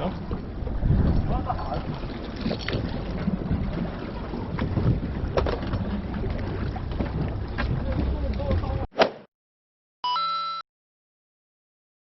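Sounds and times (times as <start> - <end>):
wind and water rumble: 0.0 - 8.9.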